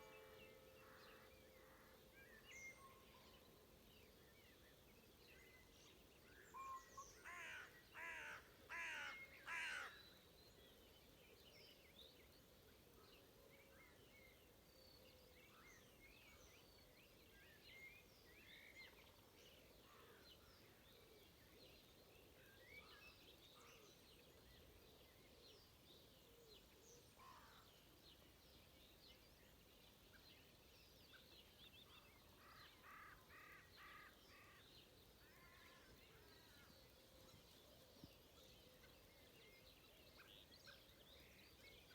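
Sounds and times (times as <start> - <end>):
songbirds chirping and trilling: 0.0 - 41.9.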